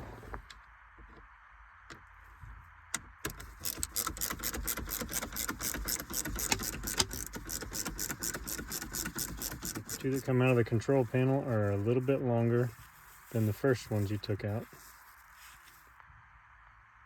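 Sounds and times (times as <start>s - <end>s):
ratchet clicking: 3.2s - 10.5s.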